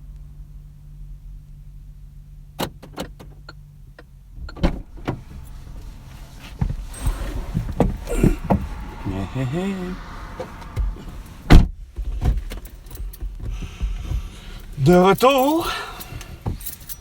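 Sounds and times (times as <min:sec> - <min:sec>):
low hum: 0:04.4 - 0:11.8
rustling and knocking handling noise: 0:04.9 - 0:08.8.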